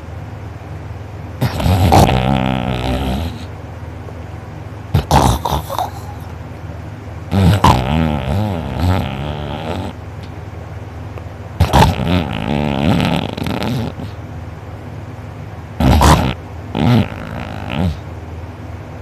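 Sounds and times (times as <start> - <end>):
person snoring loudly: 1.4 - 3.5, 5.0 - 6.2, 7.3 - 10.0, 11.6 - 14.2, 15.8 - 18.0.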